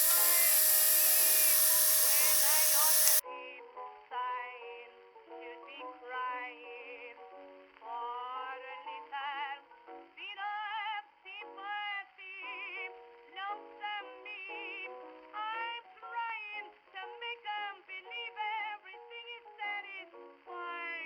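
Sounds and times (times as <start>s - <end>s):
old recording of woman singing: 4.3s - 21.0s.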